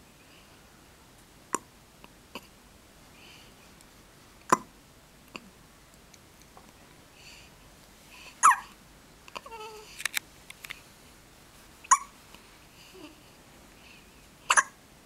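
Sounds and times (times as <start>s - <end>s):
baby hiccupping: 4.5s - 4.7s, 8.4s - 8.7s, 11.9s - 12.1s, 14.5s - 14.8s.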